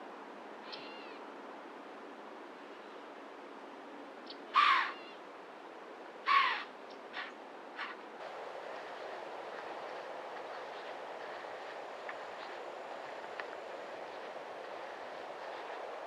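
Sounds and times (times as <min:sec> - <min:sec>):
faint bird chirp: 0:00.6 - 0:01.2
crow-like bird caws: 0:04.6 - 0:05.2, 0:06.3 - 0:06.7.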